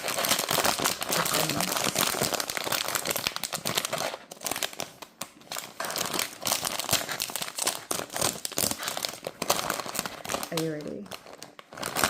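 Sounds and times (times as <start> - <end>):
crinkly packaging crumpled by hand: 0.0 - 12.0.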